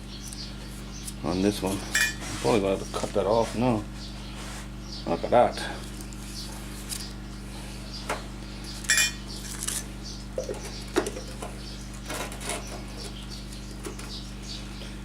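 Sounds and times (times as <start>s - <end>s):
electrical hum: 0.0s - 15.0s.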